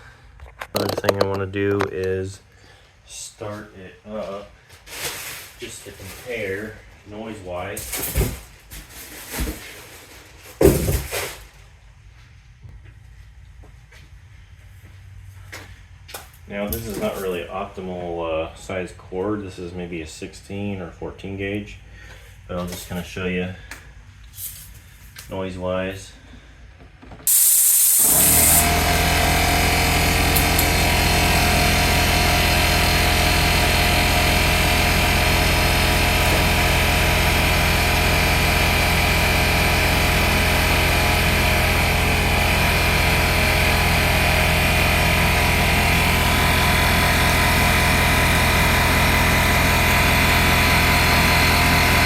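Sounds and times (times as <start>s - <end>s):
air compressor hiss: 27.2s - 44.3s
air compressor motor running: 27.2s - 52.0s.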